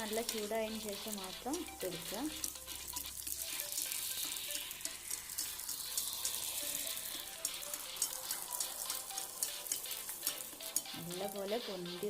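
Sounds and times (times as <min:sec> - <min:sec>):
dough deep-frying in hot oil: 0:00.0 - 0:12.0.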